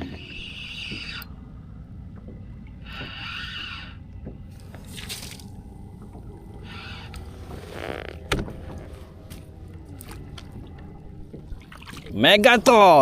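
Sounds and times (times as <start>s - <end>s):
water sloshing around kayak: 4.1s - 13.0s.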